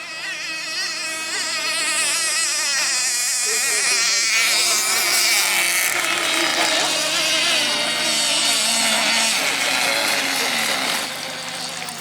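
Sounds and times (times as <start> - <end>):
outboard motors whining: 0.0 - 12.0.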